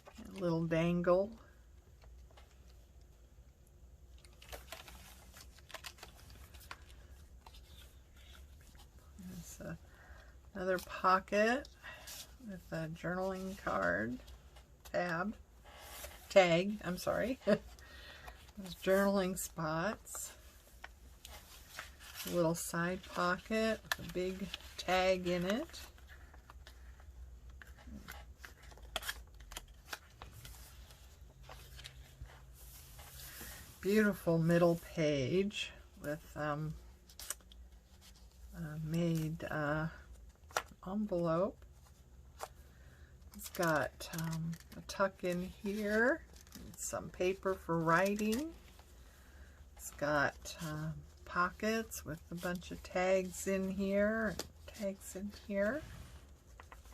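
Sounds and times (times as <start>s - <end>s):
paper pages rustling and clicking: 4.2s - 8.9s, 13.3s - 33.6s, 43.2s - 48.9s, 56.4s - 56.9s.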